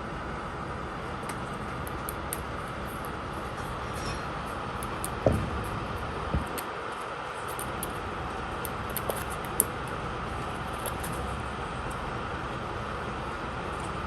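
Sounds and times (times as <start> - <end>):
steady background hum: 0.0 - 14.0
light knocks and thumps: 5.2 - 5.7.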